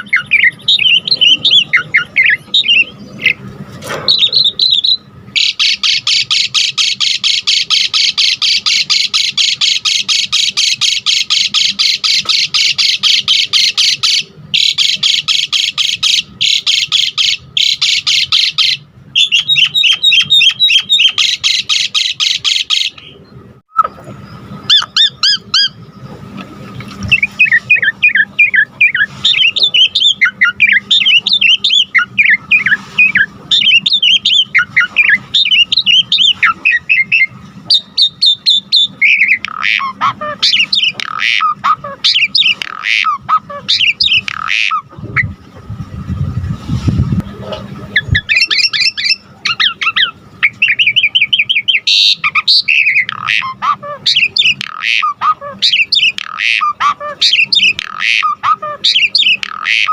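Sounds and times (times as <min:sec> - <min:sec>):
starling singing: 0:00.0 - 0:26.1, 0:26.9 - 0:45.7, 0:47.6 - 0:59.9.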